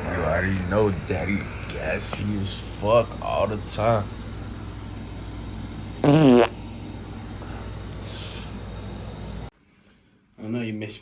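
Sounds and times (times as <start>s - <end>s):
steady background hum: 0.0s - 11.0s
man farting: 6.0s - 6.6s.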